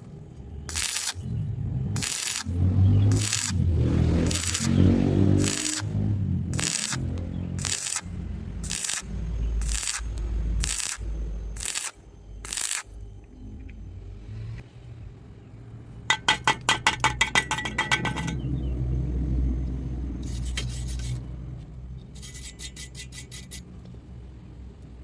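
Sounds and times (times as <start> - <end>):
low rumble: 0.0 - 16.1.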